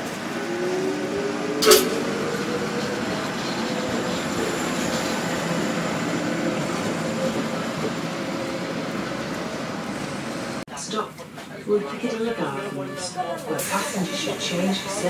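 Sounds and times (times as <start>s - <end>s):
tram rumbling on rails: 0.0s - 10.6s.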